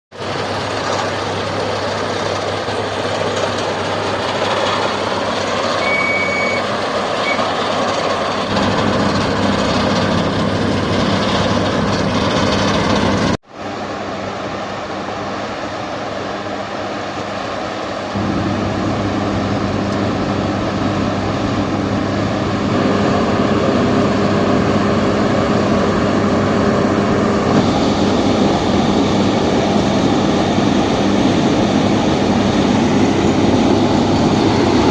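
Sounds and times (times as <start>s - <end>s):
heavy diesel machinery running: 0.1s - 34.9s
short high beep: 5.8s - 6.6s.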